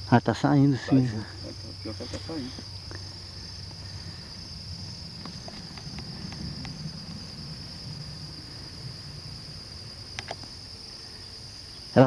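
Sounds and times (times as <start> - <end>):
insects shrilling: 0.0 - 12.0
low rumble: 3.0 - 11.6
faint clicks: 9.7 - 10.6.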